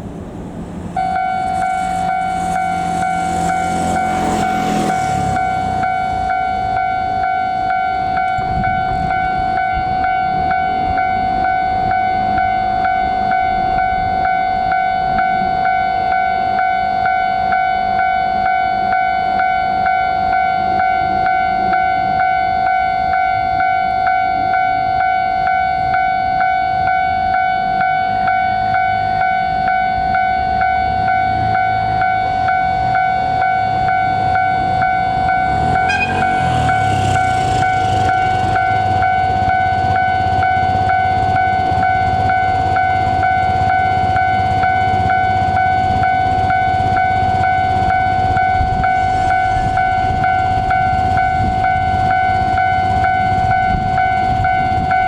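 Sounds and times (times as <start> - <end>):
low rumble: 0.0 - 12.7
level crossing warning bell: 1.0 - 55.0.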